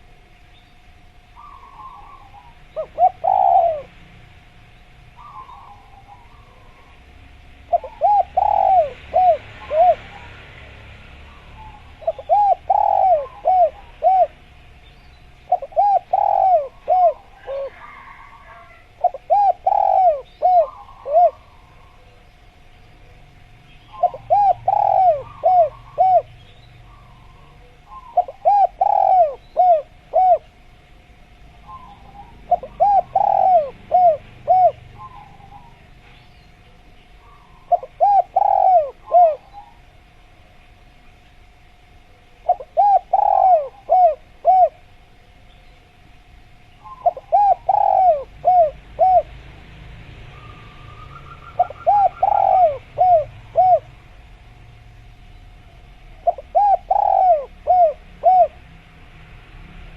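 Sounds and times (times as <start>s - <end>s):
small birds chirping: 0.0s - 41.6s, 42.3s - 58.6s
dove cooing: 1.4s - 14.7s, 15.4s - 22.3s, 23.0s - 30.8s, 31.5s - 40.1s, 41.7s - 45.4s, 46.8s - 49.7s, 50.3s - 54.6s, 55.6s - 58.8s.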